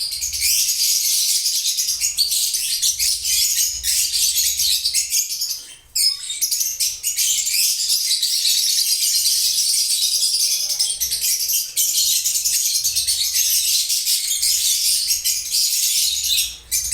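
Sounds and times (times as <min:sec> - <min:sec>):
birds chirping and twittering: 0:00.0 - 0:16.9.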